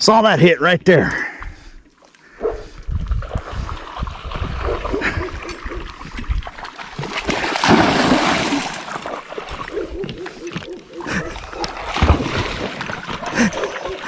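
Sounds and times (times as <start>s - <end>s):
river water splashing: 3.4s - 14.0s.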